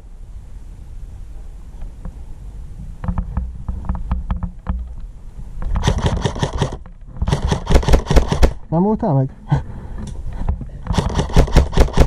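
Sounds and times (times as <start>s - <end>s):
airsoft rifle full-auto bursts: 5.8s - 8.6s, 10.9s - 12.0s.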